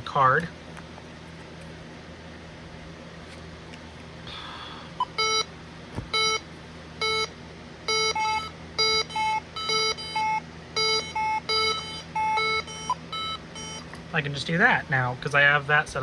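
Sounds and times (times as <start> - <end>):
alarm keypad beeping: 6.2 - 6.4, 7.0 - 7.3, 7.9 - 13.9.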